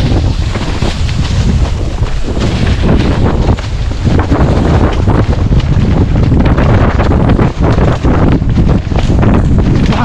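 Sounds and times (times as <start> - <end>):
wind buffeting microphone: 0.0 - 10.0.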